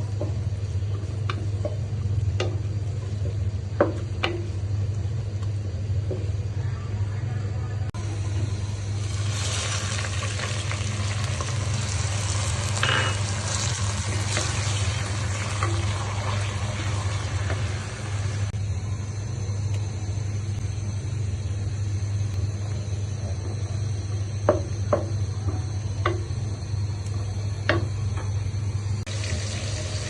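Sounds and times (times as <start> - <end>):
low hum: 0.0 - 30.0
food sizzling in hot oil: 8.0 - 18.6, 29.1 - 30.0.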